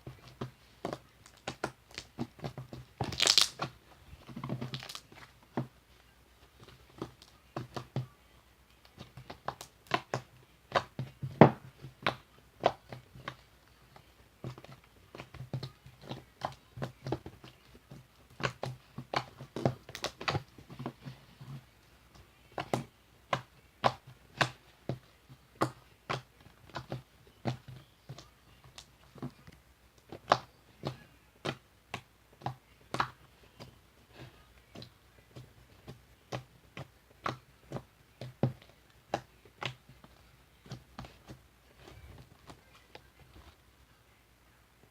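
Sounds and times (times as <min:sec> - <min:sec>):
slime clicking and popping: 0:00.9 - 0:03.7.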